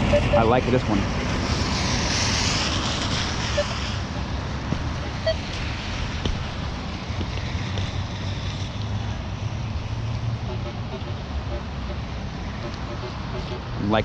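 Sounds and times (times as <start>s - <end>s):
metal detector beeps: 0.0s - 0.5s.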